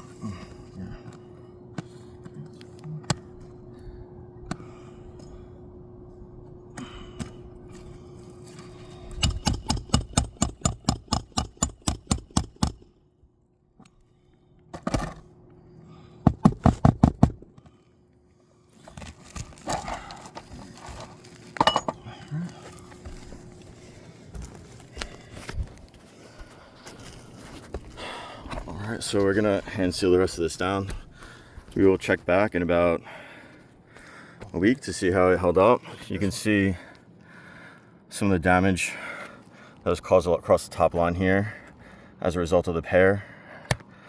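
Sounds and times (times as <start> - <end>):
hammer tapping nails: 9.2 - 12.8.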